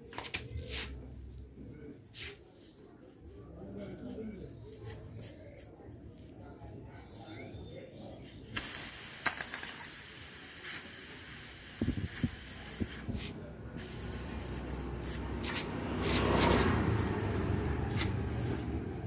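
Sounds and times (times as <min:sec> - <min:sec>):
air hissing: 0:08.2 - 0:18.7.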